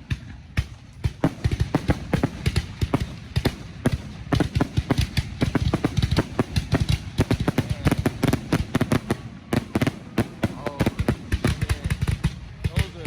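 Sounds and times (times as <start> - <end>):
fireworks cracking and banging: 0.0 - 13.0.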